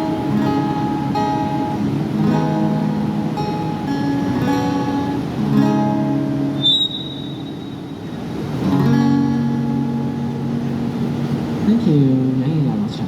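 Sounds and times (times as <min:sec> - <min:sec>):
guitar chords: 0:00.0 - 0:12.9
short high tone: 0:06.6 - 0:07.9.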